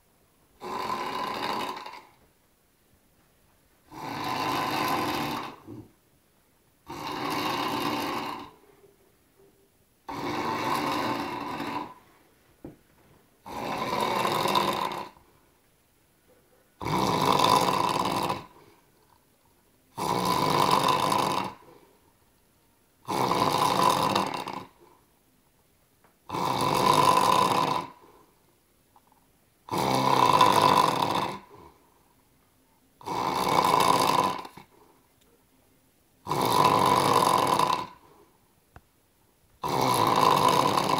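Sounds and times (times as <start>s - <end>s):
loud snoring: 0.6s - 2.2s, 3.9s - 5.9s, 6.8s - 8.6s, 10.1s - 12.0s, 13.4s - 15.3s, 16.8s - 18.8s, 19.9s - 21.8s, 23.0s - 24.9s, 26.3s - 28.2s, 29.6s - 31.8s, 33.0s - 34.9s, 36.2s - 38.2s, 39.6s - 40.9s.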